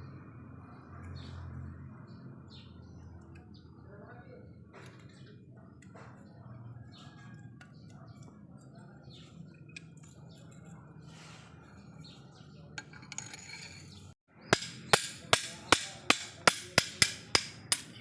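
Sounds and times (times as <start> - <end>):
hammer striking metal: 14.5 - 18.0.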